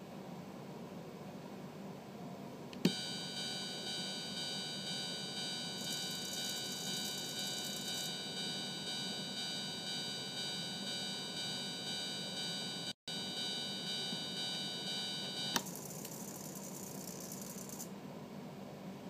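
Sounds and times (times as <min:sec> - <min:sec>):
level-crossing warning tone: 0:02.9 - 0:17.8.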